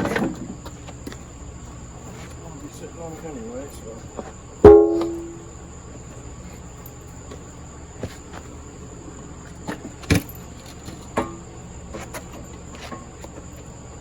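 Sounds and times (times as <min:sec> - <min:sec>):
faint high-pitched tone: 0:04.6 - 0:05.6
low hum: 0:04.7 - 0:05.8.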